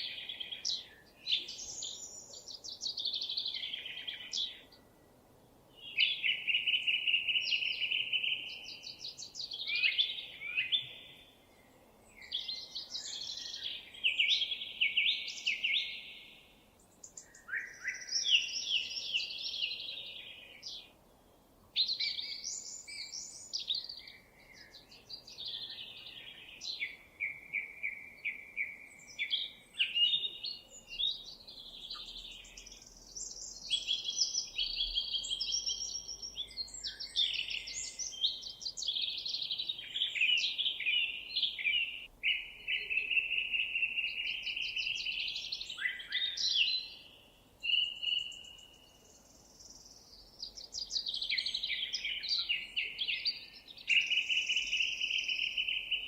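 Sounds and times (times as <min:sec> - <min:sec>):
songbirds warbling: 0:21.8 - 0:56.0.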